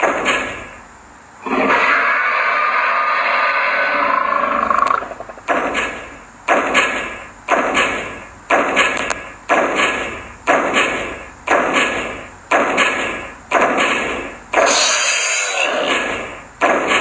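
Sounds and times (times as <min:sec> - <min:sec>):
heavy echoing thuds: 0:00.0 - 0:00.8, 0:04.8 - 0:14.8, 0:15.9 - 0:17.0.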